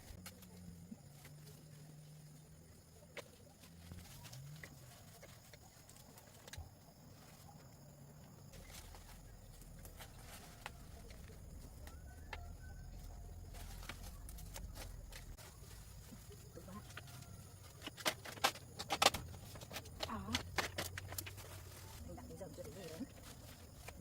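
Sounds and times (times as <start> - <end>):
low hum: 0.0 - 17.9.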